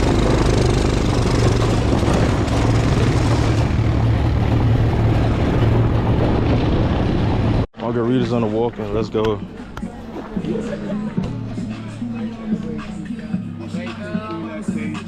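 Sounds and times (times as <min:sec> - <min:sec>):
road and wind noise: 0:00.0 - 0:07.7
vehicle engine droning: 0:00.0 - 0:07.7.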